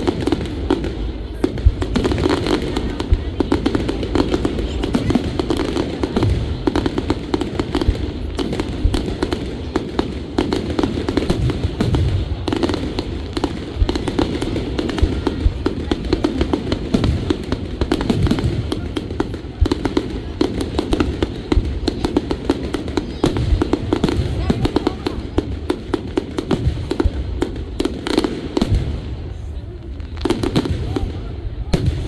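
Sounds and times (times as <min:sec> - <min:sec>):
fireworks crackling and banging: 0:00.0 - 0:32.0.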